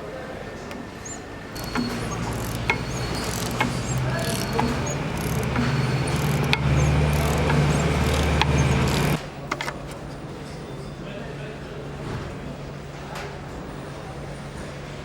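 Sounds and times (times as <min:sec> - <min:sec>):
factory machinery hum: 0:01.6 - 0:09.2
metallic clicks and clanks: 0:01.6 - 0:09.2.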